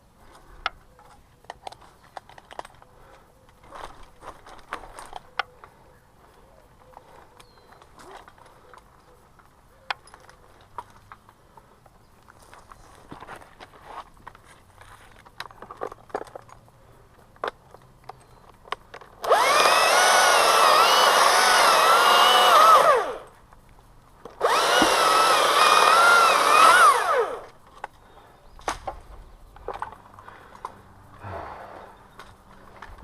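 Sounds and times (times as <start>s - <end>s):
chainsaw cutting at full throttle: 19.2s - 23.3s, 24.4s - 27.5s.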